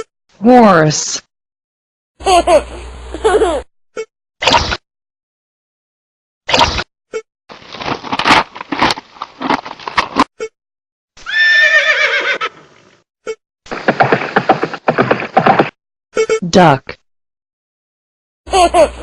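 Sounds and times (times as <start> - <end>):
horse hoof clops: 7.7 - 10.2, 13.7 - 15.7
horse whinny: 11.2 - 12.6.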